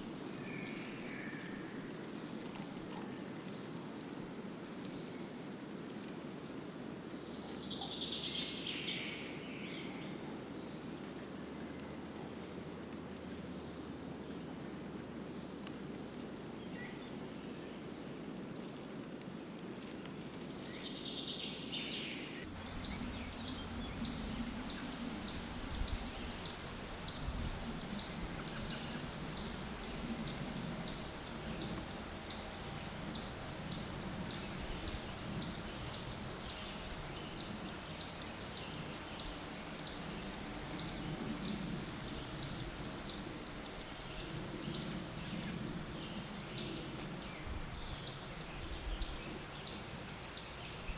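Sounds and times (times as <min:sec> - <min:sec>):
birds chirping: 0:20.6 - 0:50.9
wind rumble: 0:22.4 - 0:50.9.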